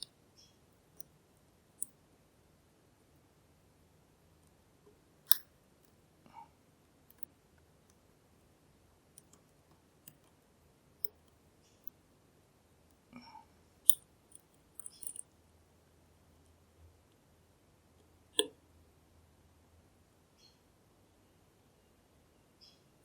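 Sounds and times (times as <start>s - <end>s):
lock pick metallic clicks: 5.3s - 5.5s, 11.0s - 11.2s, 13.9s - 15.2s.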